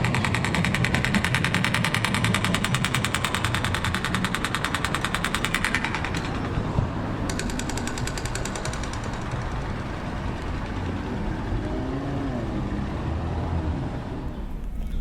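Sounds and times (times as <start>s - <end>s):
fast mechanical rattle: 0.0s - 11.7s
low engine-like rumble: 8.2s - 15.0s.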